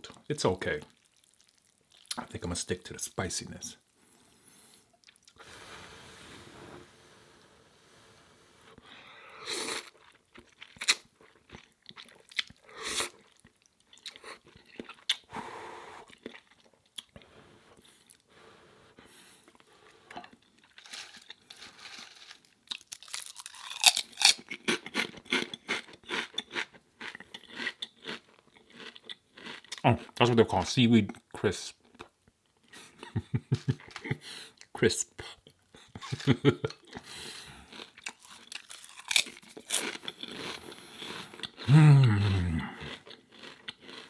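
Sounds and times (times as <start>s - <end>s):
chewing: 0.9s - 2.2s, 4.9s - 5.4s, 9.6s - 15.3s, 16.0s - 17.2s, 19.4s - 30.2s, 35.4s - 44.0s
loud crunching of crisps: 20.5s - 30.1s, 37.6s - 44.0s.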